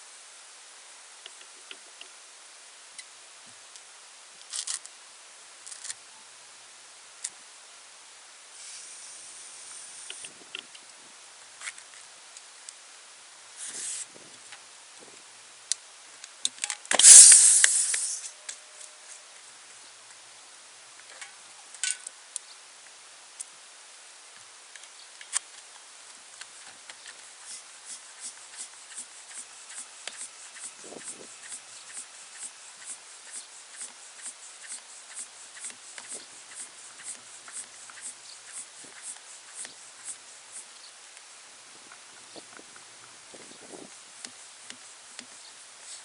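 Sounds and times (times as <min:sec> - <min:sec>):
short hisses: 0:13.6 - 0:14.1, 0:16.9 - 0:18.5.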